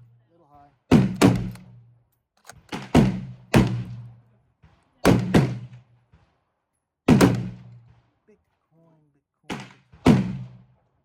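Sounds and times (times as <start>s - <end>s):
rifle shots: 0.9s - 1.8s, 2.4s - 4.1s, 4.7s - 6.3s, 7.1s - 8.1s, 9.5s - 10.6s.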